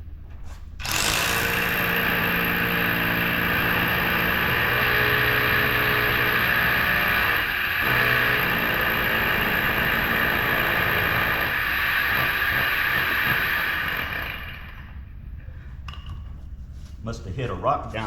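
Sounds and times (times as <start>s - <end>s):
hammer drill into concrete: 0.8s - 15.0s.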